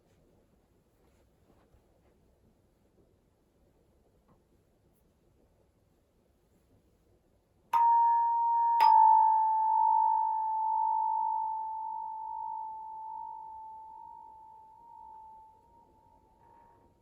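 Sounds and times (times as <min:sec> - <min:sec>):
high bell-like note ringing: 0:07.8 - 0:17.0.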